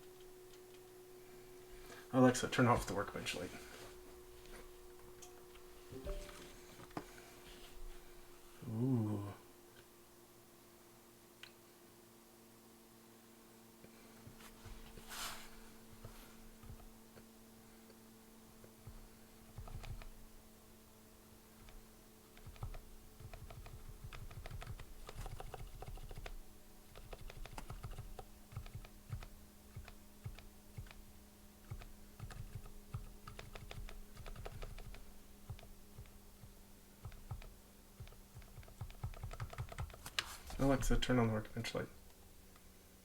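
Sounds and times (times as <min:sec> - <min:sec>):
faint steady hum: 0:00.0 - 0:43.0
quiet keyboard keystrokes: 0:18.8 - 0:20.2, 0:21.6 - 0:31.0, 0:31.6 - 0:41.0.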